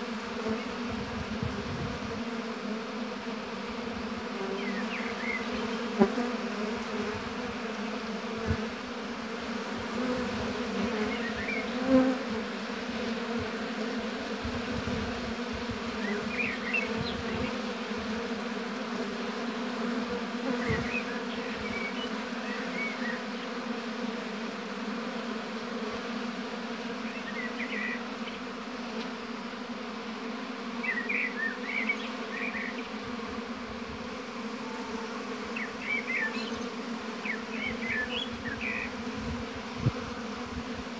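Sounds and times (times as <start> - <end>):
bees buzzing: 0.0 - 40.9.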